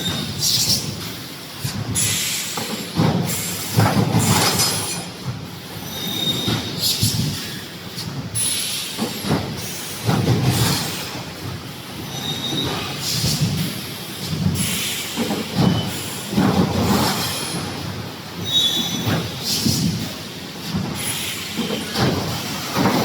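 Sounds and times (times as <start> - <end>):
high metallic squeals: 18.4 - 19.0.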